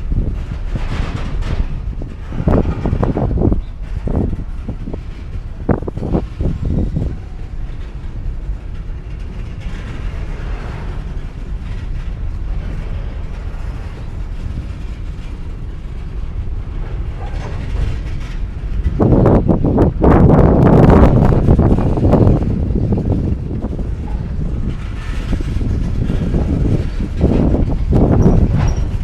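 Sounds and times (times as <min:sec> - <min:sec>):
bangs of train couplers: 0:00.0 - 0:29.0
train cars rumbling: 0:00.0 - 0:29.0
knocks of train couplers: 0:00.1 - 0:19.8.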